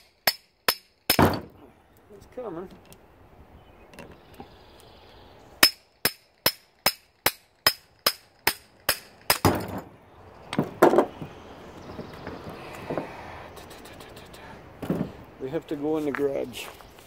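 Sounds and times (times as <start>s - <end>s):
hammer striking metal: 0.0s - 1.5s, 5.6s - 9.8s.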